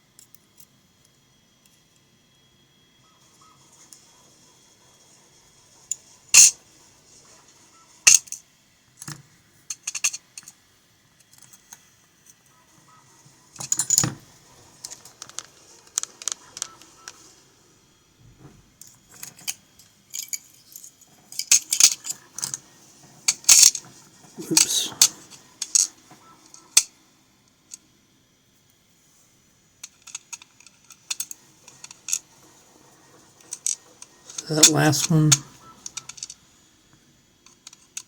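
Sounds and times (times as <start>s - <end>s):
metal lock parts clinking: 9.7s - 10.6s, 13.6s - 14.2s, 18.8s - 22.6s, 23.3s - 23.8s.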